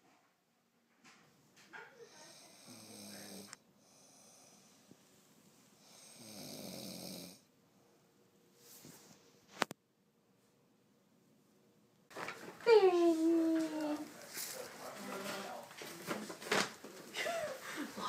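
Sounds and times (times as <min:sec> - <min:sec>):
soft breath: 0:02.0 - 0:06.3
person snoring: 0:02.2 - 0:04.7, 0:05.8 - 0:07.5.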